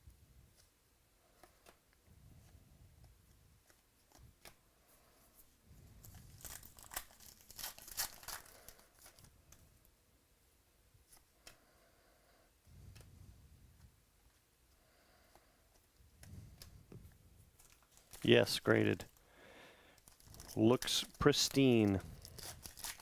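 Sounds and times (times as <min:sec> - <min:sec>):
cards being handled: 0:05.3 - 0:09.6, 0:17.6 - 0:19.2, 0:20.0 - 0:23.0
card pack wrappers crinkling: 0:06.0 - 0:09.3, 0:17.6 - 0:19.2, 0:20.0 - 0:23.0.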